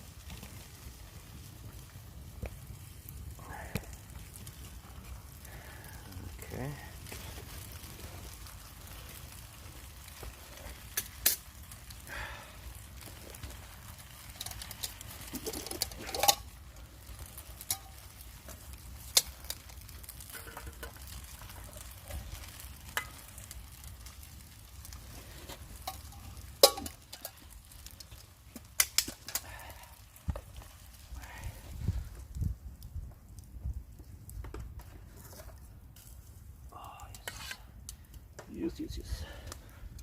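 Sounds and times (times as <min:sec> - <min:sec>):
sauce sizzling in a pan: 0:07.4 - 0:29.9.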